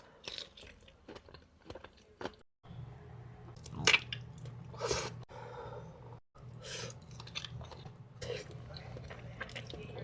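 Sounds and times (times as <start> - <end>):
low steady hum: 2.6 - 10.0
wet chewing and squishing: 6.9 - 10.0.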